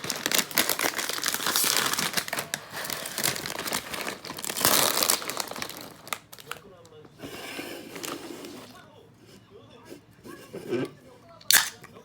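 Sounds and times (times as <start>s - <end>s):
packaging crinkling: 0.0s - 6.7s.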